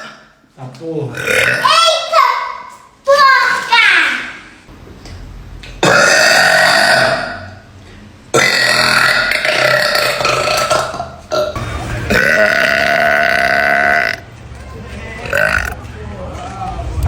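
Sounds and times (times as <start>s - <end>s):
girl belching loudly: 1.1s - 1.8s, 5.8s - 7.6s, 8.3s - 14.2s, 15.2s - 15.8s.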